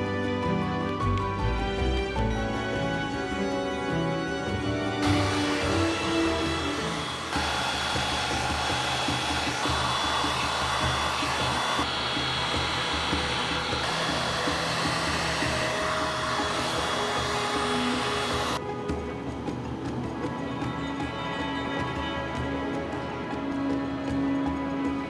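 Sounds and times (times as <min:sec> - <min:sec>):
background music: 0:00.0 - 0:25.0
electric blower running: 0:05.0 - 0:18.6.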